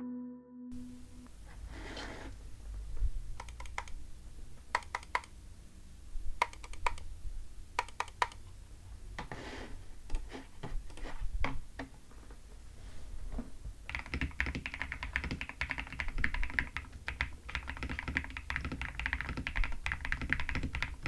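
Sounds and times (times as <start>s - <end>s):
mechanical keyboard typing: 3.4s - 4.0s, 4.7s - 5.3s, 6.4s - 7.0s, 7.8s - 8.4s, 13.9s - 21.0s.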